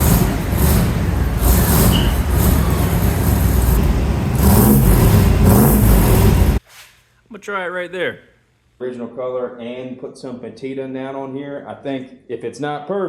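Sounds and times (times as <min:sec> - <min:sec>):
truck engine revving through exhaust: 0:00.0 - 0:06.6.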